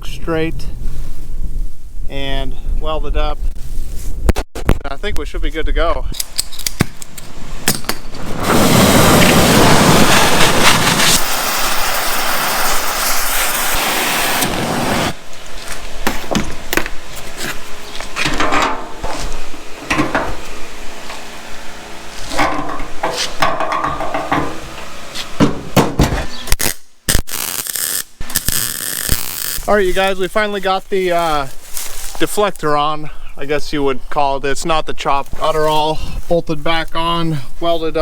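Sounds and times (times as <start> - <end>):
loud harsh machine noise: 7.2 - 25.7
metal knocks and clanks: 18.2 - 19.2, 19.8 - 21.2, 22.3 - 26.4.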